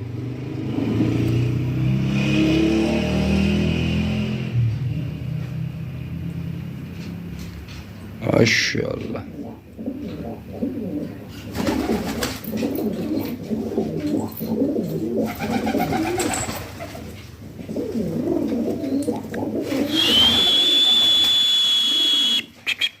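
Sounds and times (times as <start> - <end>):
pigeons cooing: 8.4 - 21.2, 22.0 - 23.0.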